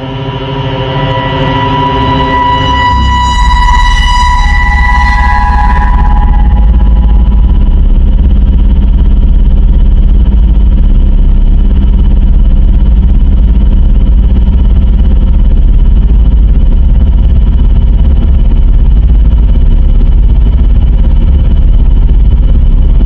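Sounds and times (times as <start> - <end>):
faint steady high tone: 0.0 - 9.4
distorted electronic drone: 0.0 - 23.0.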